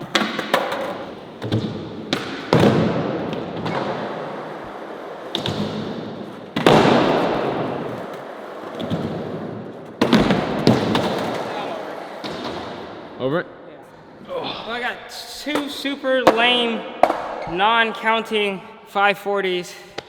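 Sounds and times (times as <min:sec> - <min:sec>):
skateboard landing thumps: 0:00.0 - 0:04.1, 0:05.3 - 0:11.5, 0:15.6 - 0:17.4
skateboard clacks: 0:00.0 - 0:04.2
skateboard wheels rolling on wood: 0:00.0 - 0:12.8.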